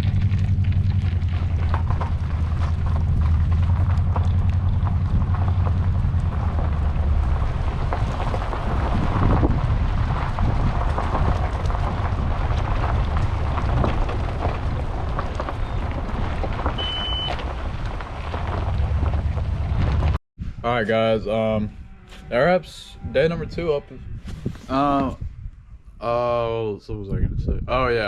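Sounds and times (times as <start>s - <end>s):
wind buffeting microphone: 0.0s - 28.0s
short high beep: 16.8s - 17.4s.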